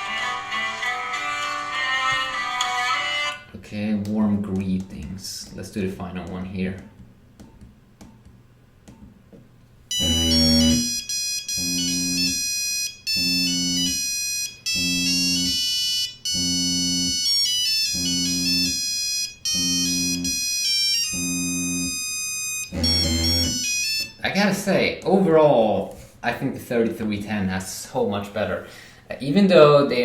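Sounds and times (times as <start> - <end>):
mobile phone ringtone: 9.9 - 24.2.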